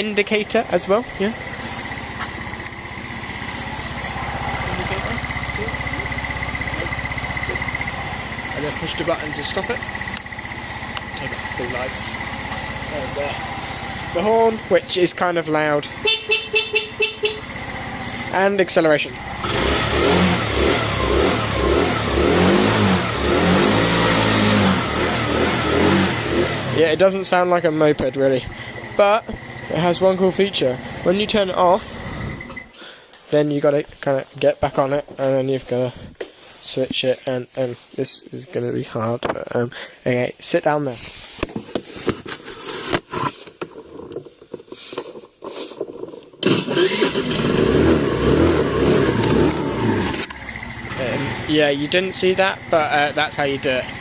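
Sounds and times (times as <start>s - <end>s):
scooter engine revving: 0.0s - 32.7s, 46.4s - 54.0s.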